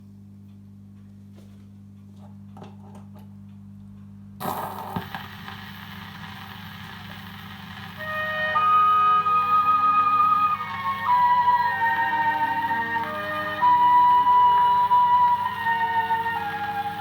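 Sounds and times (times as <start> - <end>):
playback equipment humming: 4.2 - 17.0
tape hiss: 4.4 - 17.0
faint music notes: 7.9 - 17.0.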